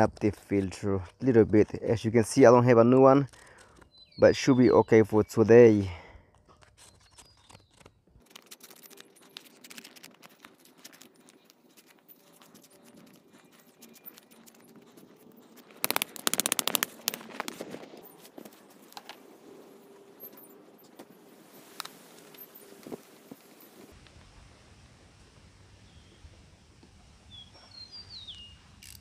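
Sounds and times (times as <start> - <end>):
sharp taps: 15.8 - 17.6.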